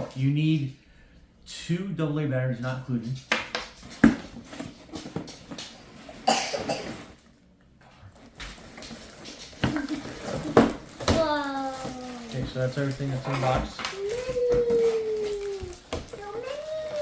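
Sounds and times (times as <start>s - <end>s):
packaging rustle: 8.1s - 17.0s.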